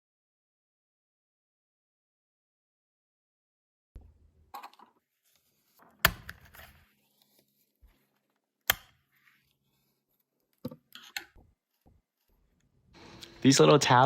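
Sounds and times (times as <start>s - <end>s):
sharp plastic snaps: 6.0s - 6.7s, 8.6s - 9.0s.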